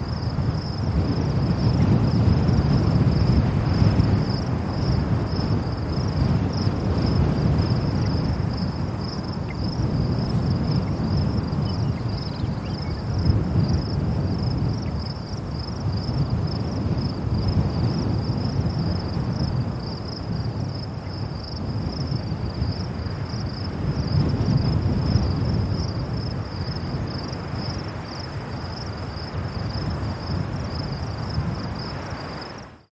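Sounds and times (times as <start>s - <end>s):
high pulsing insect trill: 0.0s - 32.8s
strong wind gusting on microphone: 0.0s - 32.9s.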